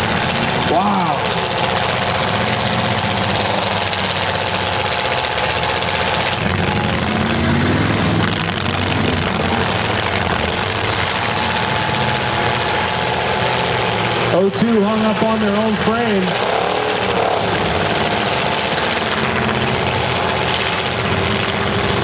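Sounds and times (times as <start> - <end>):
car engines running loudly: 0.0 - 22.0
engine revving: 0.0 - 22.0.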